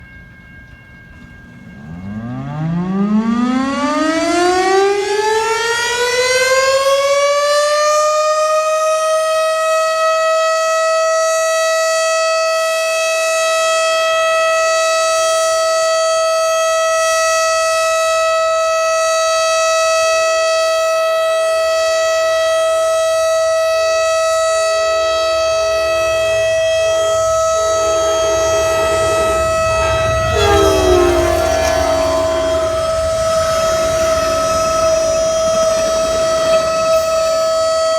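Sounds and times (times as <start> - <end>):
fire alarm siren wailing: 1.7 - 37.9
low rumble: 24.8 - 37.8.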